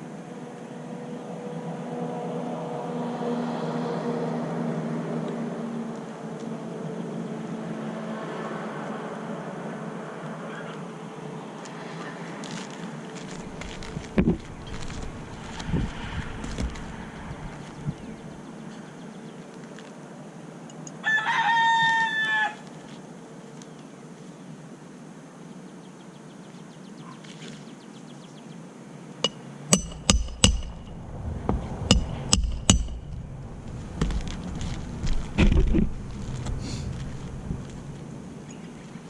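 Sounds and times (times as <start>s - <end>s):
loud pitched crowing call: 21.0s - 22.7s
sharp clicks or knocks: 29.2s - 33.2s
low rumble: 29.9s - 38.1s.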